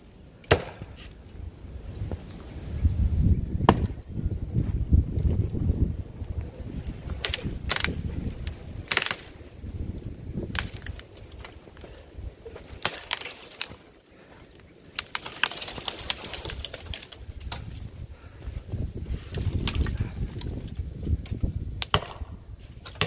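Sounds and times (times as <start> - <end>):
axe chopping wood: 0.4 - 1.0, 3.6 - 4.0, 12.7 - 13.8, 21.8 - 23.0
wind rumbling on microphone: 1.0 - 12.9, 14.3 - 23.0.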